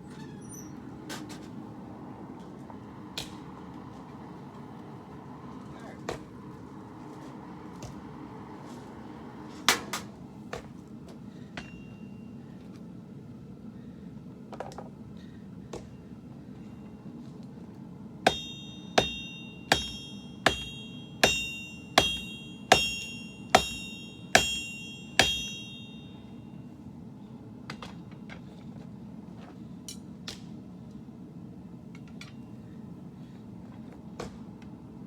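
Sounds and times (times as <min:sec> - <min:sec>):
hammer striking blade on anvil: 0:11.6 - 0:12.2, 0:18.3 - 0:26.4.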